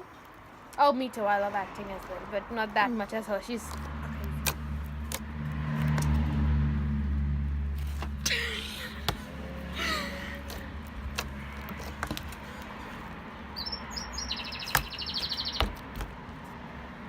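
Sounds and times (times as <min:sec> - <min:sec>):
bird chirping: 0:13.5 - 0:15.8
fast high bird trill: 0:13.6 - 0:15.7.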